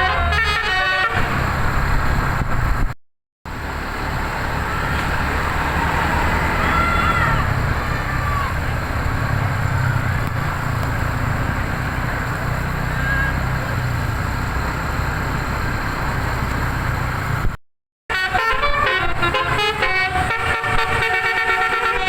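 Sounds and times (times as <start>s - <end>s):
bus engine rumble: 0.0s - 22.0s
road noise: 0.0s - 22.0s.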